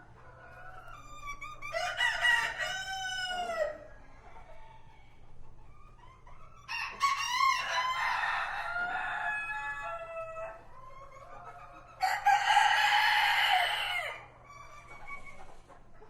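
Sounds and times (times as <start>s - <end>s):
rooster crowing: 6.7s - 10.6s, 12.0s - 14.3s.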